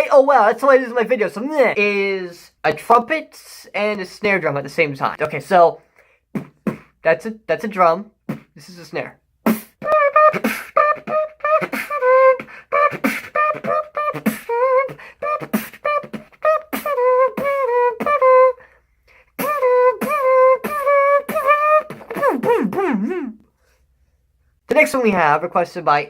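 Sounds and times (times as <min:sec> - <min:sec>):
beatboxing trumpet notes: 0:06.3 - 0:07.2, 0:08.1 - 0:18.7, 0:19.3 - 0:23.4
beatboxed snare hits: 0:06.4 - 0:07.0, 0:08.2 - 0:08.7, 0:09.4 - 0:18.3, 0:19.4 - 0:23.2.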